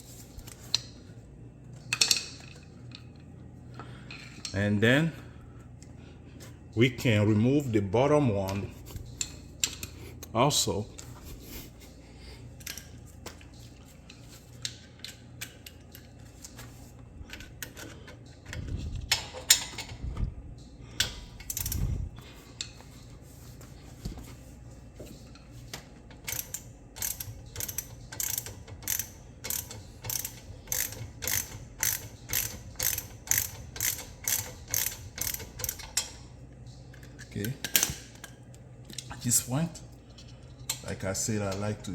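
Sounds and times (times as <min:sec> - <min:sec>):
ratchet clicks: 0:26.2 - 0:36.2.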